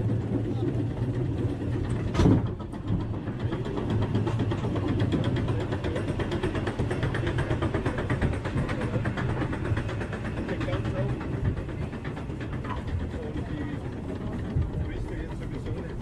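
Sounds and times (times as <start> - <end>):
roller coaster rattling on track: 0.0 - 16.0.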